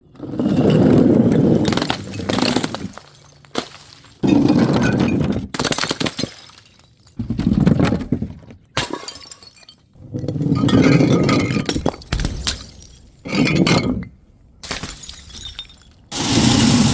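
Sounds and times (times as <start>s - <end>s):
glass bottles smashing: 1.6s - 7.2s, 8.8s - 16.4s
glass shards scattering: 5.6s - 7.2s, 8.8s - 16.3s.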